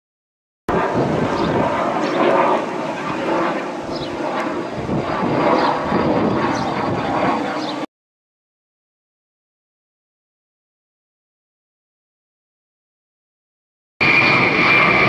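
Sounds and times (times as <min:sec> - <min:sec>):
aircraft engine flying over: 0:00.7 - 0:07.9, 0:14.0 - 0:15.0.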